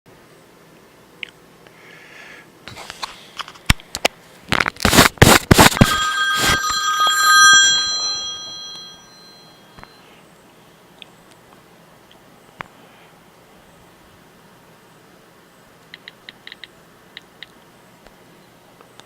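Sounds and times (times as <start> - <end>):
struck metal object ringing: 5.6 - 9.6.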